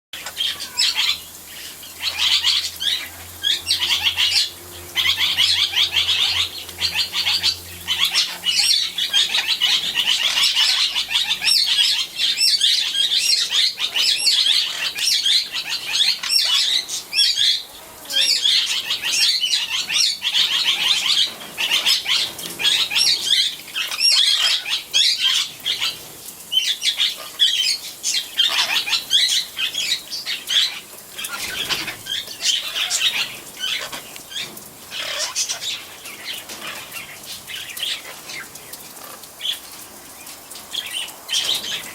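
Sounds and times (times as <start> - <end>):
parrot wings splashing in water: 18.0 - 41.9.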